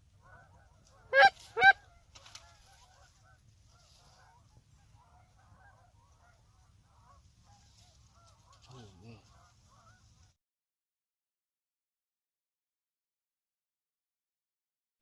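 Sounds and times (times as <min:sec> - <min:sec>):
distant flock of geese honking: 0:00.0 - 0:10.4
loud close goose honks: 0:00.2 - 0:10.2.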